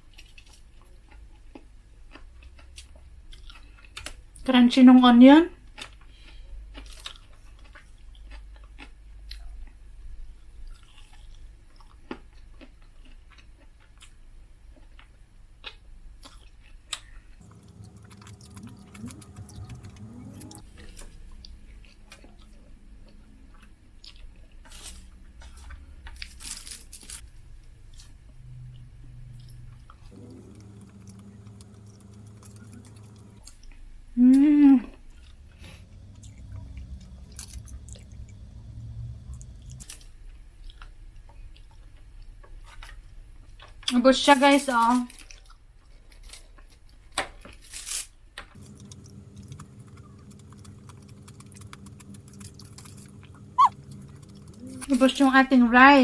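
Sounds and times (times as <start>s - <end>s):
chewing and crunching food: 0.0s - 4.5s, 5.5s - 56.0s
loud tone rising and falling: 17.4s - 20.6s
wet clicks and crackles: 46.2s - 55.5s.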